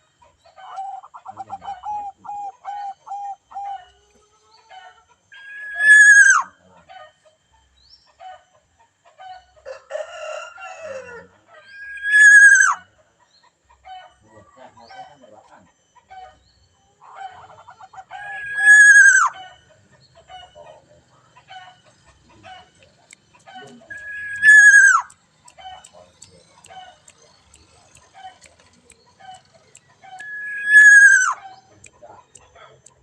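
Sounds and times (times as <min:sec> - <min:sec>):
rooster crowing: 0:09.6 - 0:12.8
short bird calls: 0:15.9 - 0:33.0.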